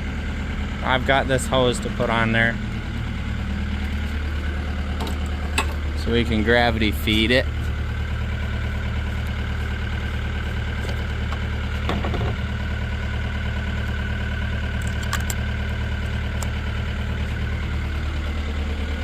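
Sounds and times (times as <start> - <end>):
engine idling: 0.0 - 19.0
light clicks and clanks of handling: 14.8 - 15.4.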